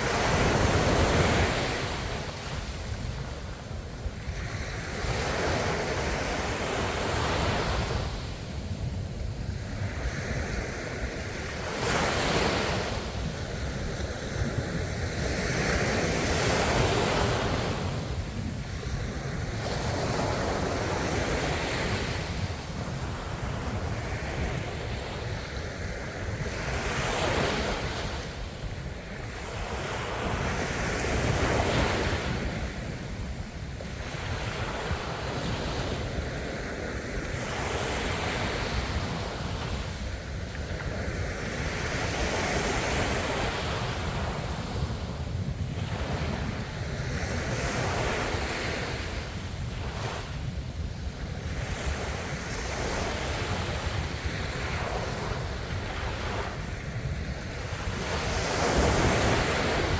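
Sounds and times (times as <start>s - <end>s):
ocean waves breaking: 0.0s - 8.7s, 51.3s - 59.9s
low rumble of surf: 0.0s - 59.9s.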